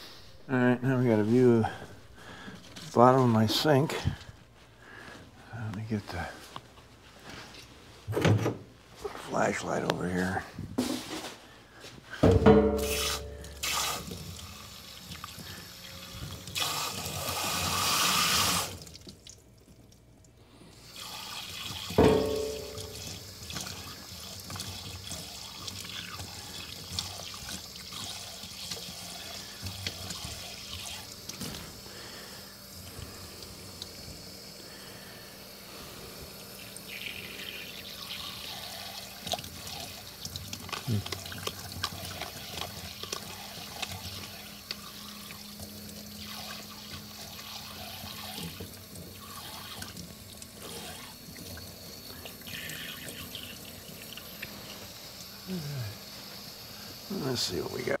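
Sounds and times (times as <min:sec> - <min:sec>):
hard knocks: 0:12.2 - 0:13.3, 0:22.0 - 0:23.0
tap water running: 0:12.3 - 0:58.0.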